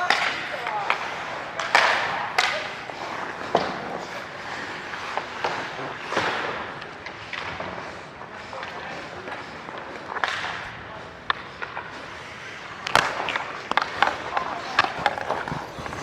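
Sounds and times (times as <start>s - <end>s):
ice skates scraping on rink: 0.0s - 16.0s
hockey knocks: 12.8s - 16.0s.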